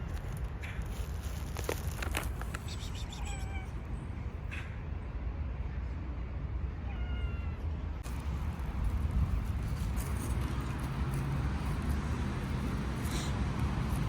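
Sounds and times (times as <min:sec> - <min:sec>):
cat meowing: 0:02.9 - 0:03.8, 0:06.9 - 0:07.6.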